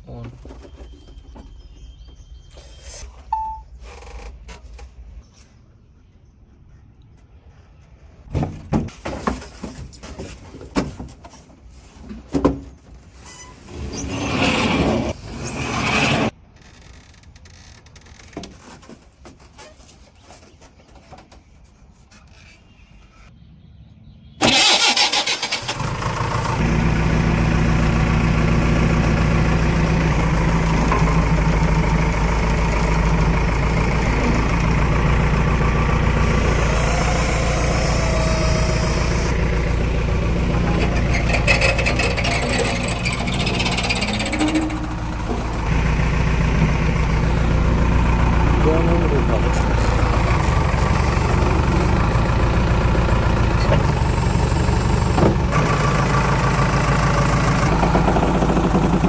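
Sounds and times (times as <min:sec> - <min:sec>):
diesel engine starting and running: 0:12.9 - 0:16.4, 0:24.4 - 0:59.0.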